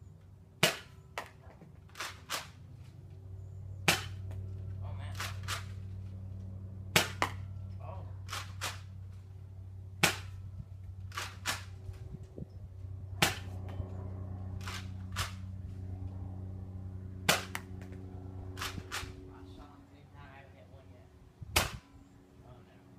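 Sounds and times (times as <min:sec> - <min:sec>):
steady low hum: 0:00.0 - 0:22.9
toy blaster firing snaps: 0:18.6 - 0:19.1.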